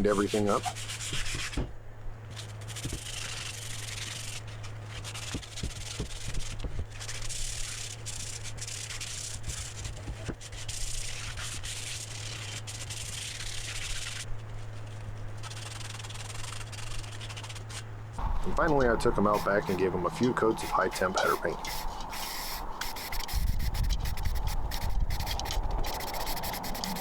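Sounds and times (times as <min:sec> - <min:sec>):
sanding metal pipes: 0:15.4 - 0:27.0
steady low hum: 0:18.2 - 0:27.0.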